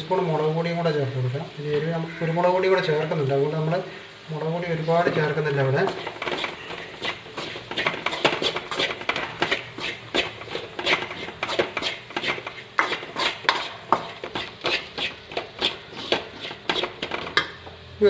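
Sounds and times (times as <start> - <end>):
metal spoon scraping a pan: 5.8 - 17.5.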